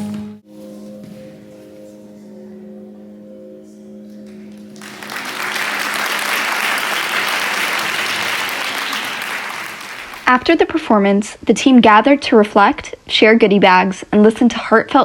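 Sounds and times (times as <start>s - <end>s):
show music closing chord: 0.0s - 9.6s
audience applause: 4.7s - 10.3s.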